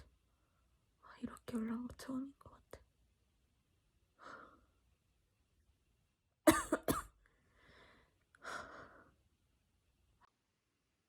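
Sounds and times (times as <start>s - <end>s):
person coughing: 6.5s - 7.2s.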